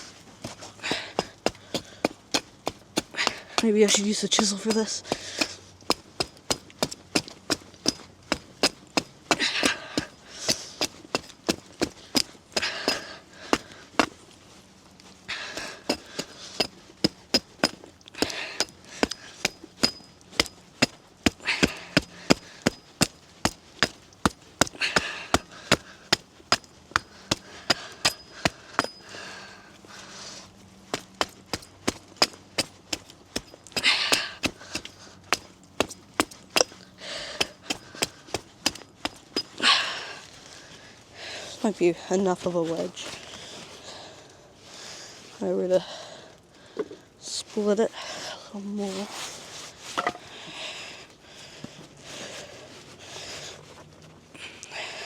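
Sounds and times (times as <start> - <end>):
wood splitting crunch: 0.0 - 40.7, 49.1 - 52.5
hand tool chopping wood: 0.4 - 14.3, 15.3 - 29.6, 30.8 - 40.2, 49.9 - 50.5.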